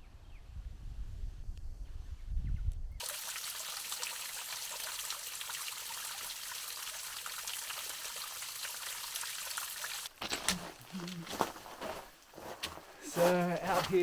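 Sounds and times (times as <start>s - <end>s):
water trickling and pattering: 3.0s - 14.0s.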